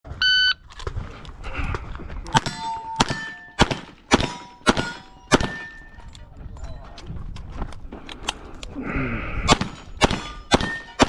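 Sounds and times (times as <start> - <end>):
metallic ring of steel target: 2.4 - 6.0, 10.0 - 11.0.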